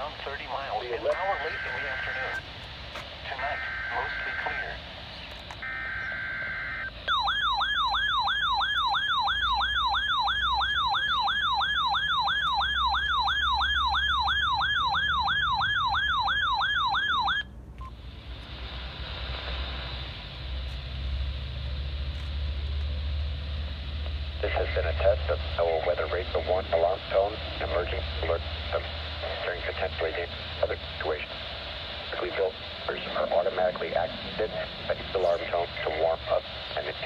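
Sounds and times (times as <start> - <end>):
radio hiss: 0.0 - 7.2, 17.9 - 37.0.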